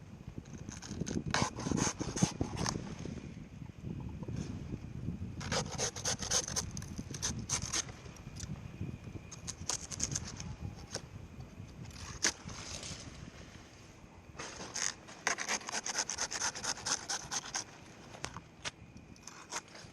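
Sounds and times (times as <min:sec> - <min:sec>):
palm fronds scraping: 0:11.9 - 0:18.3.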